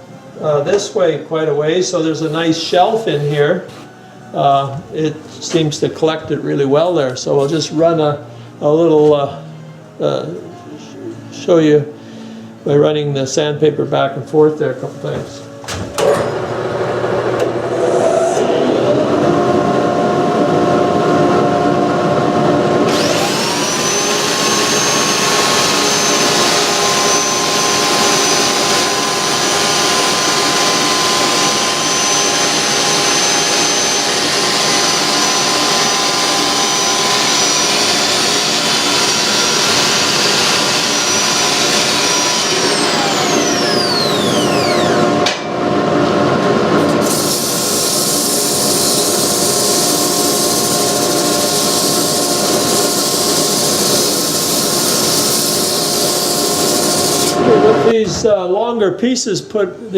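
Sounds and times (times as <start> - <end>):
high motor whine: 14.9 - 58.0
wood lathe turning: 22.9 - 45.4, 46.9 - 57.9.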